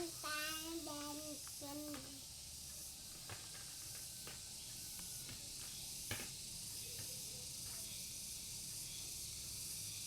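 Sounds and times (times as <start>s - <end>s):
steady background hiss: 0.0s - 10.0s.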